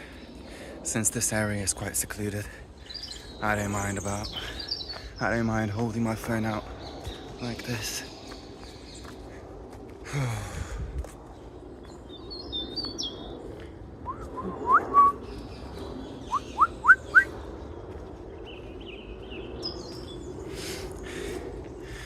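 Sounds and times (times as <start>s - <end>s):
woodland birds chirping: 0.0s - 22.0s
rising bird whistles: 14.0s - 15.3s, 16.2s - 17.3s.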